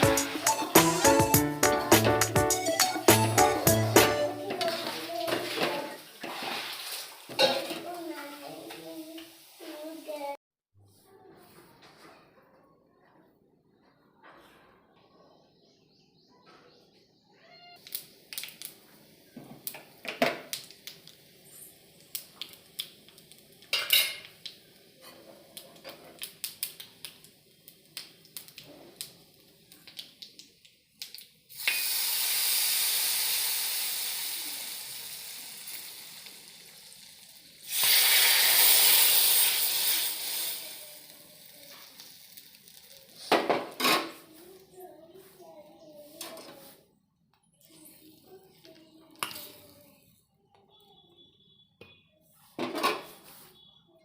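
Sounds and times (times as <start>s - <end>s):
sizzling in hot oil: 0.0s - 1.6s, 3.0s - 10.4s, 17.8s - 44.4s
metal utensils clinking on pot: 23.7s - 24.4s.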